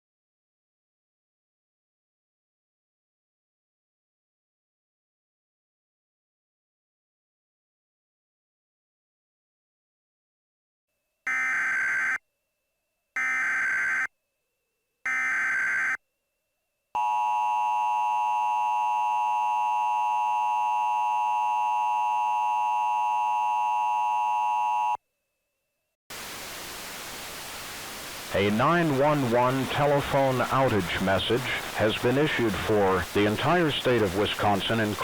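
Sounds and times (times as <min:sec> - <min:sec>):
static hiss: 0:26.1 - 0:35.0.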